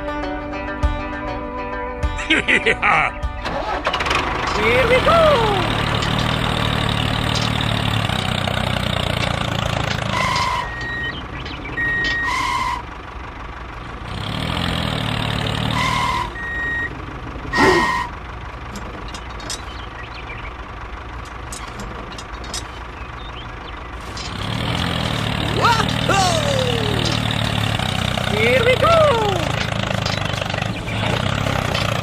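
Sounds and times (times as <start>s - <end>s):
vehicle engine running: 0.0s - 32.0s
high electronic beeps: 10.2s - 12.5s.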